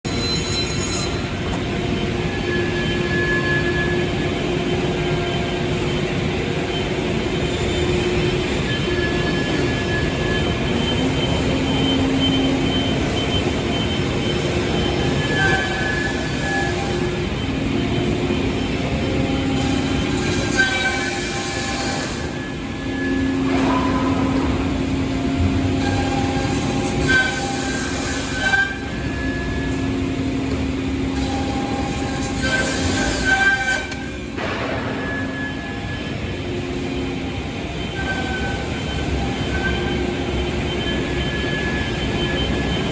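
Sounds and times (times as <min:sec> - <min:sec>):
machine motor and spindle tones: 0:00.1 - 0:42.9.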